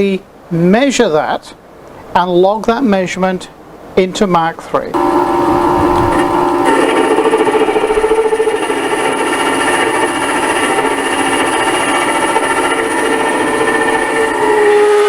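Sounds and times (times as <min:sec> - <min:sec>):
lathe spindle whine: 0:05.0 - 0:15.0.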